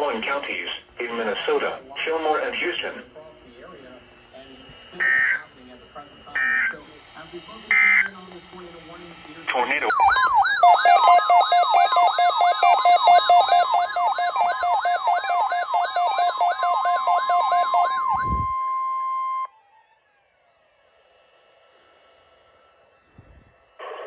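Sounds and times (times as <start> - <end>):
steady alarm tone: 1.1 - 24.0
electronic siren sweeping: 4.8 - 24.0.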